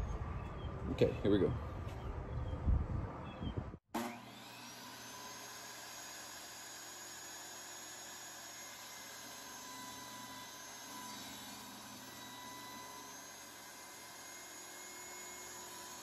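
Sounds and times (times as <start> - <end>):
table saw spinning up: 4.0 - 16.0.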